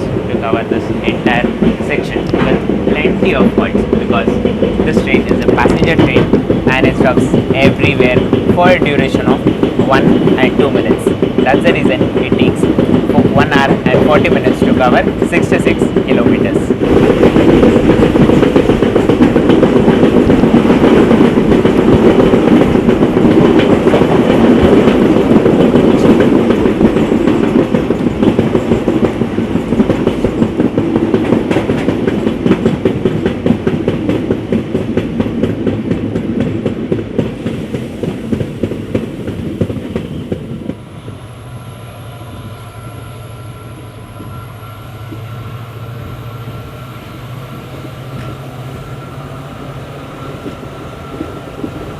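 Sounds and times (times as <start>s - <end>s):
train wheels clattering over rails: 0.0s - 40.8s, 46.8s - 51.9s.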